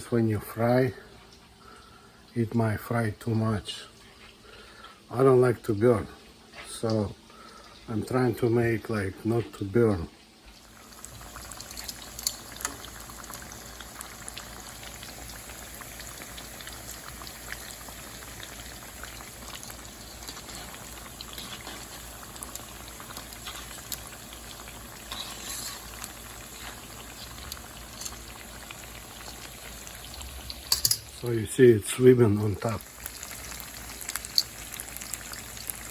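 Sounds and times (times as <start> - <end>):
deep-frying oil sizzling and popping: 10.4 - 35.9.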